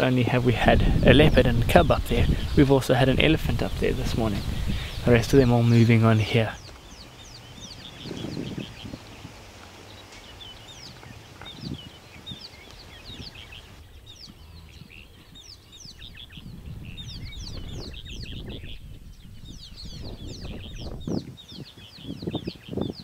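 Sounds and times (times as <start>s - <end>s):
low rumbling noise: 0.0s - 6.6s, 13.6s - 21.4s
birds chirping: 0.0s - 23.0s.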